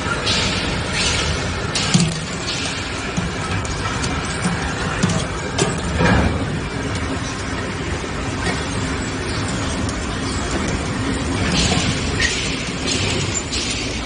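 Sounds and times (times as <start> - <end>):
metal knocks and clanks: 0.0 - 7.0, 10.6 - 14.0
industrial machinery din: 0.0 - 14.0.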